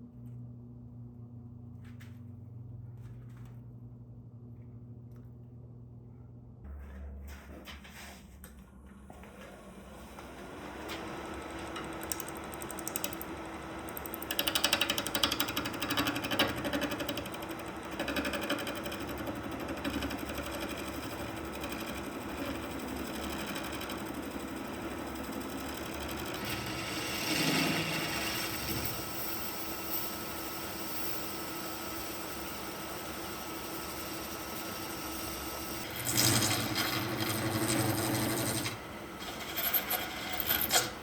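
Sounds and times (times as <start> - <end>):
wood lathe humming: 10.4 - 41.0.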